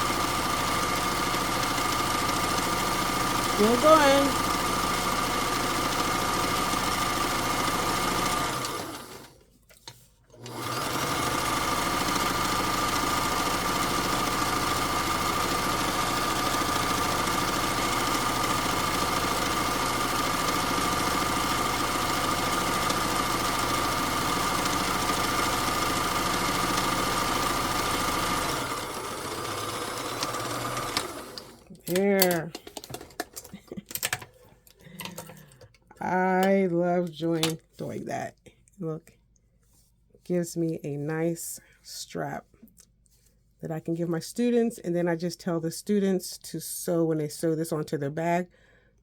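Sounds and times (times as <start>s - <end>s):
sewing machine running: 0.0s - 9.4s, 10.4s - 34.2s.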